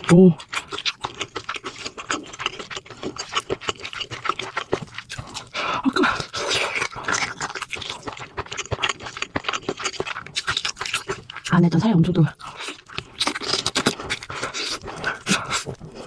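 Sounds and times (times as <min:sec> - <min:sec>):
wet chewing and mouth clicks: 0:00.0 - 0:16.0.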